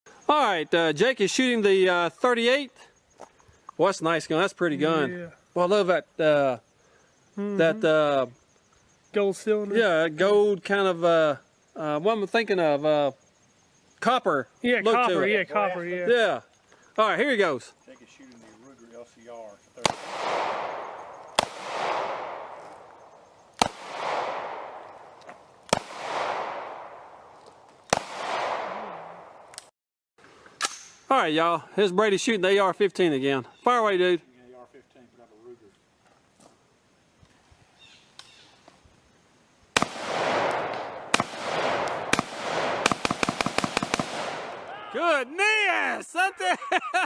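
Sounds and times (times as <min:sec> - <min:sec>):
rifle gunshots: 0:19.8 - 0:22.8, 0:23.6 - 0:25.0, 0:25.7 - 0:27.3, 0:27.9 - 0:29.4, 0:39.8 - 0:44.7.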